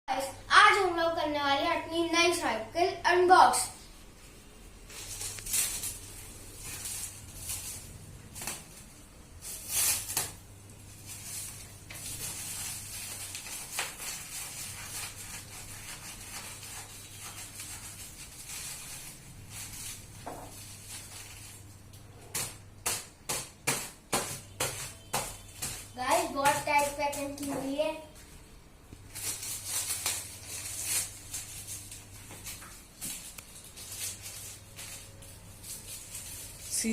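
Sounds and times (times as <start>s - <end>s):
packaging rustling: 4.8s - 21.8s, 29.0s - 36.9s.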